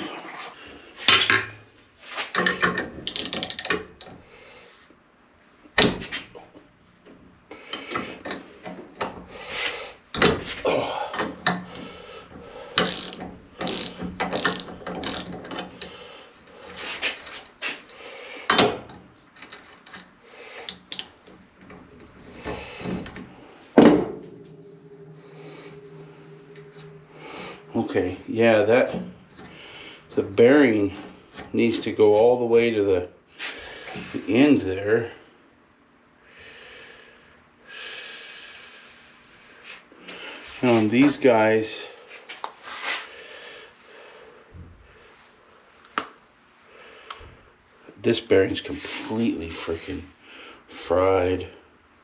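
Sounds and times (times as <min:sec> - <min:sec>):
metal tools clicking and clinking: 0:02.4 - 0:04.2, 0:12.8 - 0:16.0, 0:20.7 - 0:21.2.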